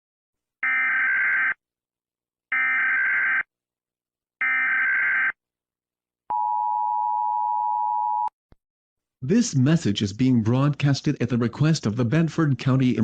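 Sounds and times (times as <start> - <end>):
two-tone attention alarm: 0.6 - 1.6, 2.5 - 3.5, 4.4 - 5.4.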